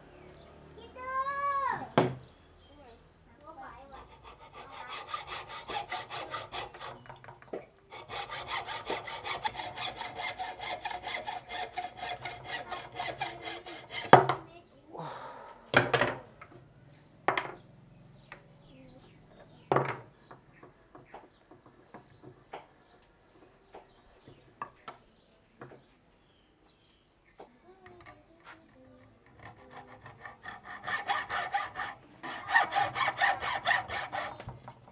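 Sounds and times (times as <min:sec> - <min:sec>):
hand saw cutting wood: 0:03.6 - 0:14.4, 0:28.5 - 0:34.9.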